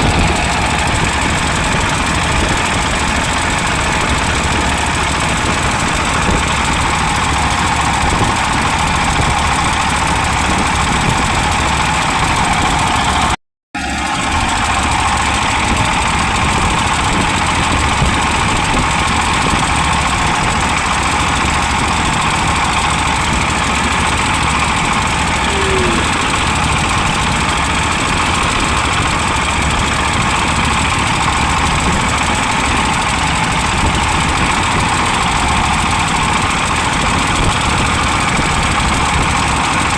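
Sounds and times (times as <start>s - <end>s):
wind noise on microphone: 0.0s - 13.3s
vehicle engine running: 0.0s - 39.9s.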